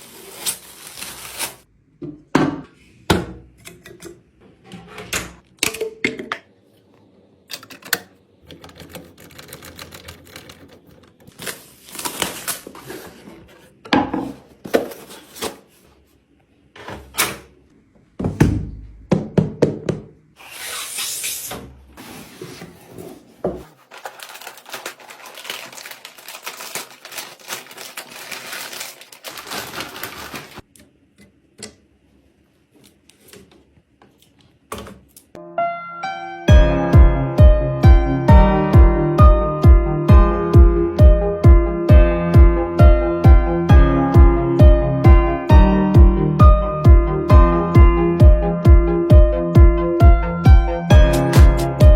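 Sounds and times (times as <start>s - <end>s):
rustling of packaging: 0.0s - 1.7s, 11.0s - 16.2s, 22.0s - 30.7s.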